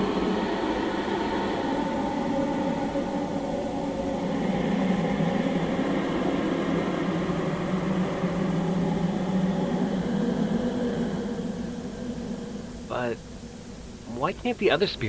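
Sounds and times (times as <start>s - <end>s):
droning hum with hiss: 0.0s - 15.0s.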